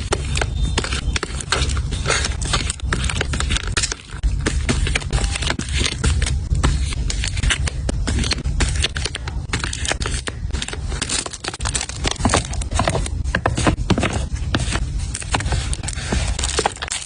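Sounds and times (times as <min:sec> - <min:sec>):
plastic packaging crinkling: 0:00.0 - 0:17.0.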